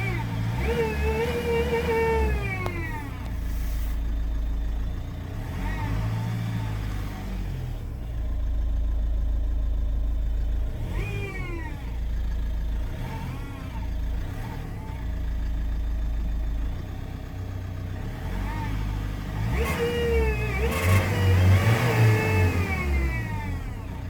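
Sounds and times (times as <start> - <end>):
diesel engine low drone: 0.0 - 24.0.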